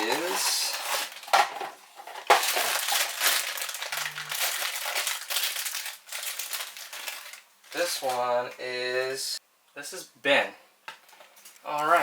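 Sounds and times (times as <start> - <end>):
packaging crinkling and rustling: 0.0 - 9.1.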